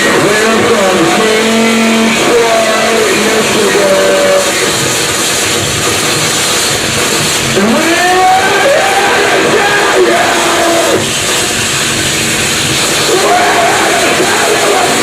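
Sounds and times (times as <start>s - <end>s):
distorted noise wall: 0.0s - 15.0s
wavering pitched wail: 7.6s - 11.6s, 13.1s - 15.0s.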